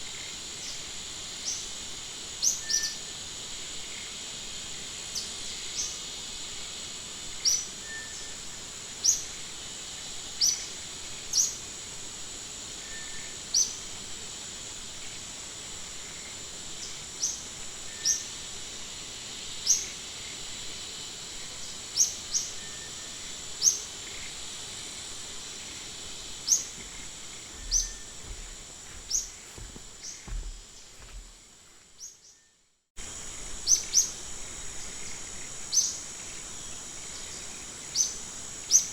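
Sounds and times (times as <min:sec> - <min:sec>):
high-pitched insect drone: 0:00.0 - 0:31.4, 0:33.0 - 0:38.9
rising bird chirps: 0:27.6 - 0:28.2.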